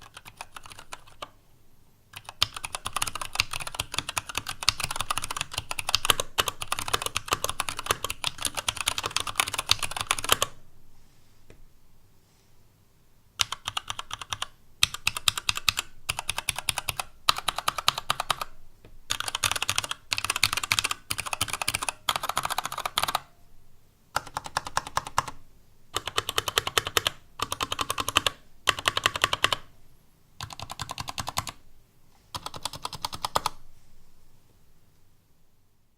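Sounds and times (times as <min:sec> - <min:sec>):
mechanical keyboard keystrokes: 0:00.0 - 0:01.3, 0:02.2 - 0:10.6, 0:13.4 - 0:18.5, 0:19.1 - 0:23.2, 0:26.0 - 0:29.6, 0:30.4 - 0:31.6, 0:32.4 - 0:33.6.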